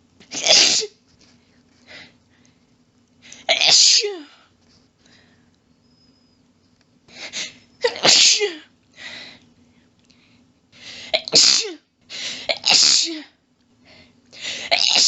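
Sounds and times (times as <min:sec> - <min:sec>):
person sneezing: 0:00.2 - 0:01.0, 0:07.2 - 0:08.6, 0:11.0 - 0:13.3, 0:14.5 - 0:15.0.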